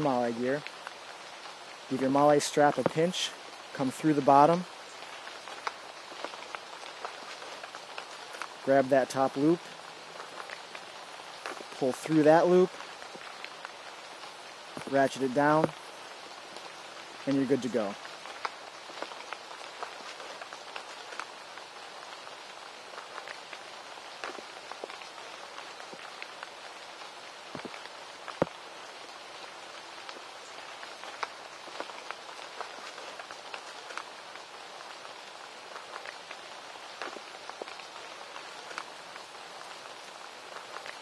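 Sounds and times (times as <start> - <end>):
rain pattering: 0.0 - 41.0.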